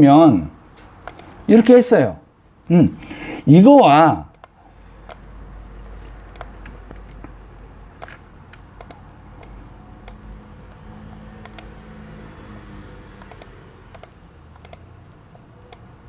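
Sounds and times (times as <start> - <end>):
low steady hum: 0.0 - 16.0
light clicks and taps: 6.0 - 7.4.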